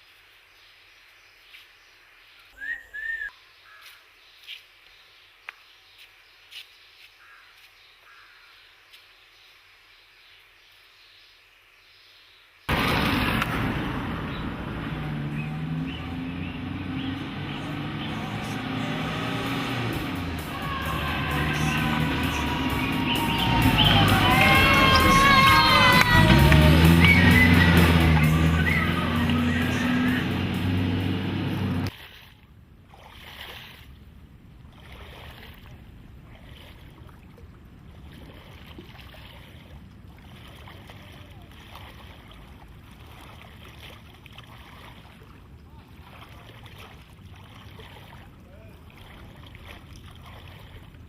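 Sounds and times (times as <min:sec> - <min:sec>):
road traffic: 0:12.7 - 0:32.0
music: 0:17.7 - 0:31.8.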